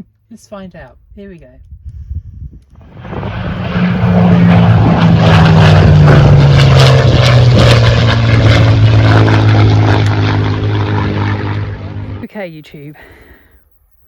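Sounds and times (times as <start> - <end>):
model plane motor and propeller: 2.7 - 12.3.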